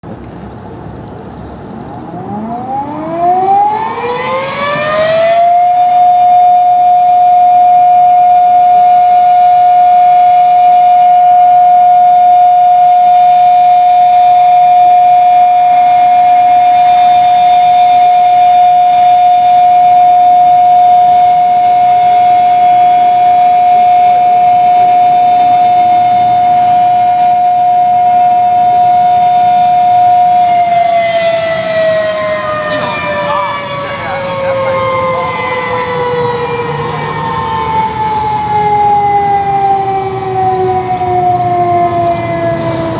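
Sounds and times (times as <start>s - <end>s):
outdoor warning siren: 1.5s - 42.9s.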